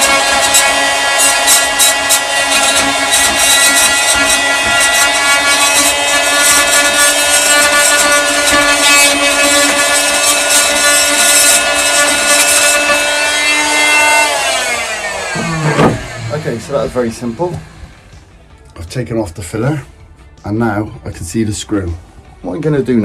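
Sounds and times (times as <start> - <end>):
oscillating multi-tool whining: 0.0 - 18.1
blade scraping filler: 15.1 - 18.2.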